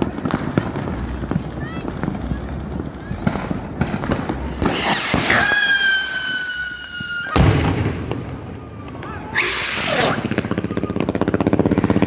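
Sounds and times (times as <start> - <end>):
firework bang: 0.0 - 12.0
firework crackling burst: 0.0 - 12.0
firework whistle: 4.3 - 11.3.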